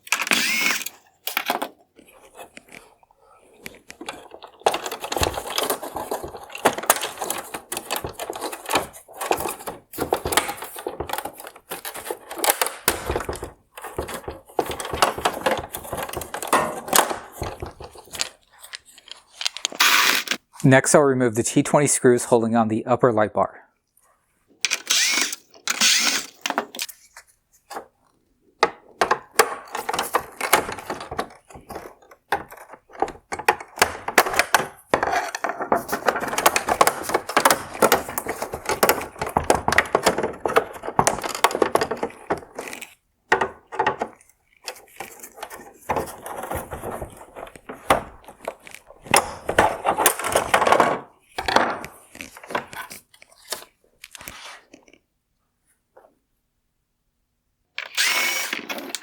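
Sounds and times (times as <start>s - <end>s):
tool clicking on plastic: 0.0s - 2.9s, 3.5s - 20.4s, 24.7s - 26.9s, 28.6s - 54.3s.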